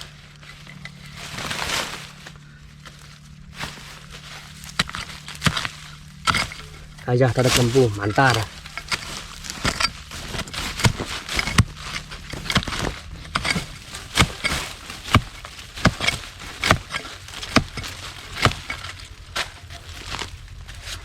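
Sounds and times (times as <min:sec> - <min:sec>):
digging tool striking soil: 0:03.6 - 0:21.0.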